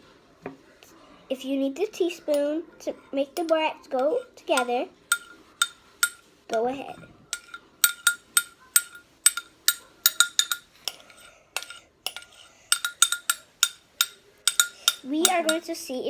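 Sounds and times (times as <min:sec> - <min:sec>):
teaspoon clinking against cup: 0:03.4 - 0:06.3, 0:07.3 - 0:15.7.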